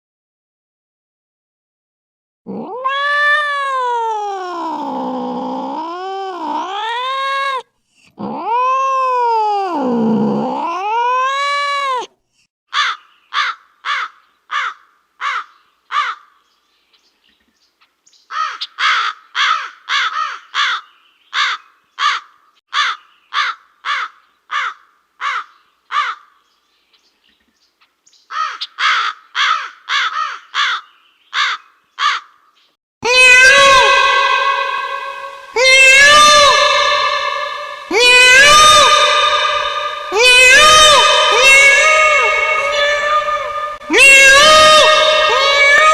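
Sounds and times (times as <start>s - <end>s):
cat yowling: 2.5s - 12.1s, 33.0s - 45.9s.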